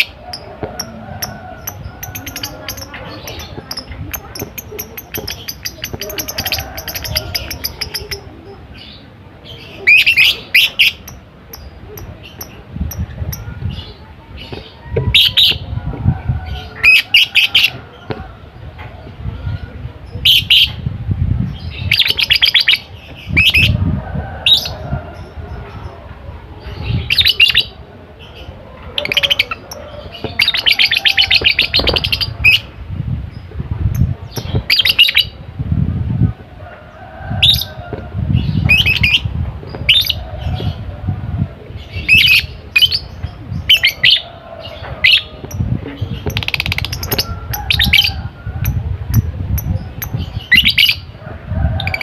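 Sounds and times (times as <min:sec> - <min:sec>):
lovebird chirping and trilling: 0:00.0 - 0:08.4, 0:09.8 - 0:14.0, 0:45.0 - 0:51.1.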